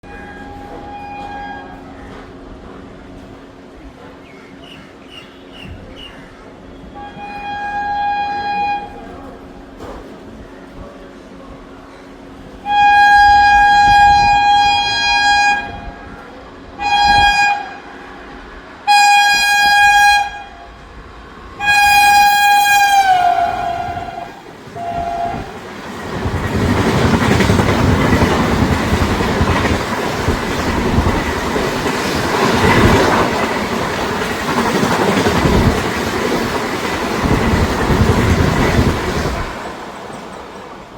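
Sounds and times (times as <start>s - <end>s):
locomotive horn blasts: 0.0s - 1.9s, 6.8s - 9.1s, 12.6s - 18.0s, 18.8s - 20.8s, 21.6s - 25.6s
train wheel rumble and clickety-clack: 0.0s - 40.9s.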